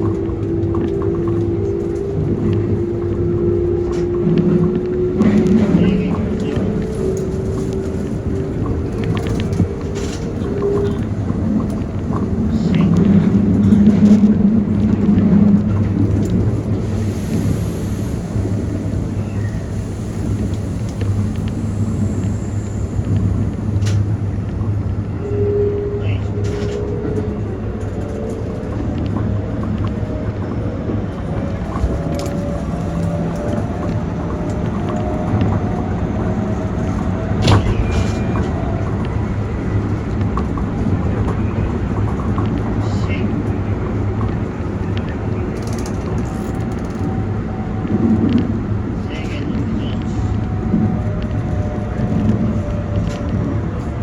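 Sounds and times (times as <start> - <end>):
train running rumble: 0.0 - 54.0.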